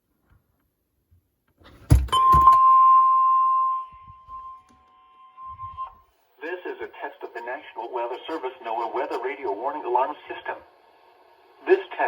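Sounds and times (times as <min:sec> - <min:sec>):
steady warning alarm tone: 0:02.0 - 0:06.1.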